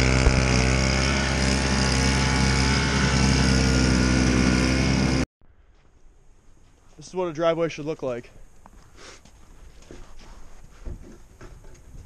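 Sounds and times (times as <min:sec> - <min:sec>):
snowblower engine running: 0:00.0 - 0:05.2.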